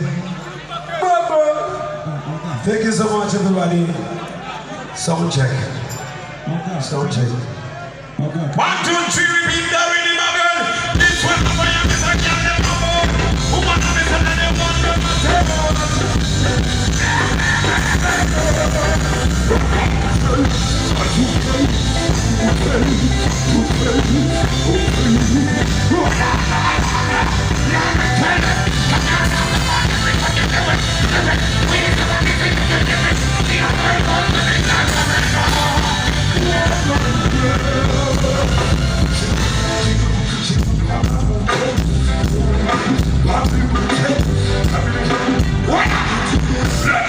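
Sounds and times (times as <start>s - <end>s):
loud music over pa: 8.7s - 47.0s
heavy bass: 10.8s - 47.0s
person singing: 10.9s - 47.0s.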